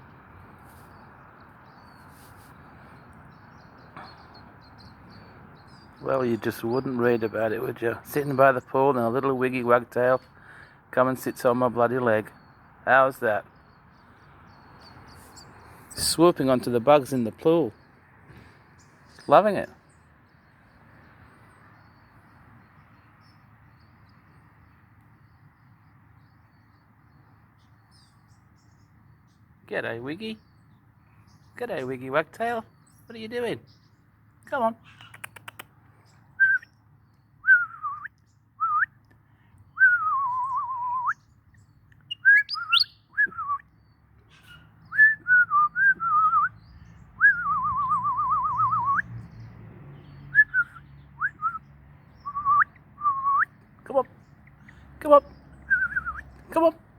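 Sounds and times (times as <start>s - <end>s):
high bird chirps: 39.7s - 49.4s, 50.0s - 56.7s
faint high chirps: 42.1s - 43.6s.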